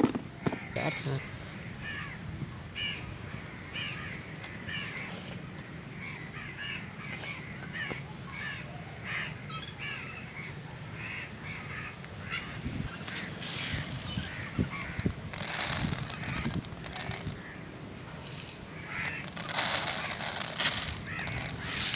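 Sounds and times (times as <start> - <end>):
crows cawing: 11.0 - 21.9.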